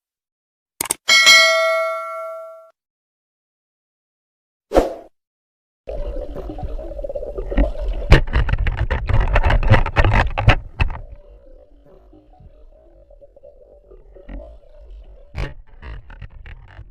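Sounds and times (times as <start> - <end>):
water splashing and sloshing: 5.9 - 16.9
knocks and clatters: 7.6 - 11.1.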